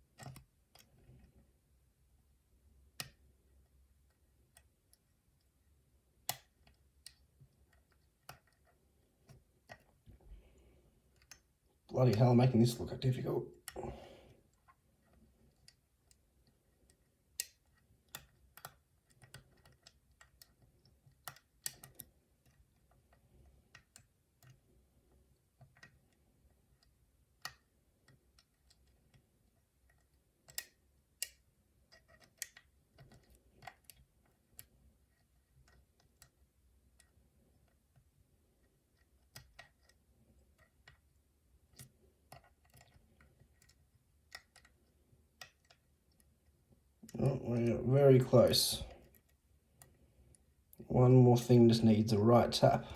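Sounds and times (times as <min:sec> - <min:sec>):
lock pick clicking in lock: 0:17.4 - 0:22.6, 0:29.9 - 0:34.0.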